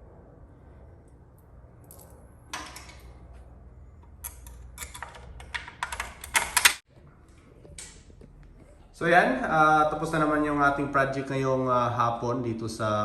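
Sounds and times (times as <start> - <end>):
sharp clicks and rattles: 4.0 - 6.9.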